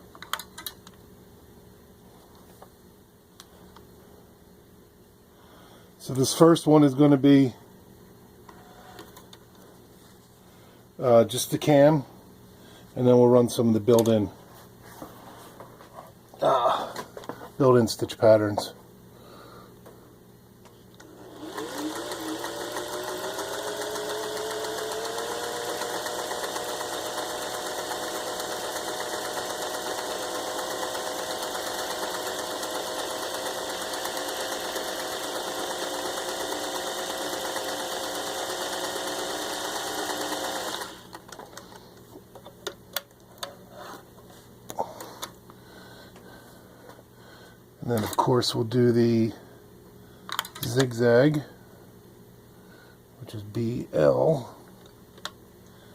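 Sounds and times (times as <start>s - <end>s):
sewing machine running: 21.0s - 41.3s.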